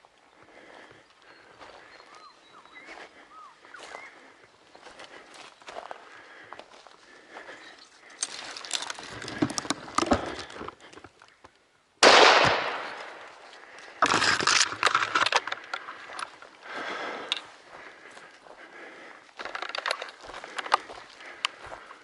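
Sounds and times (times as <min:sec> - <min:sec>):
rifle shot: 0:12.0 - 0:13.3.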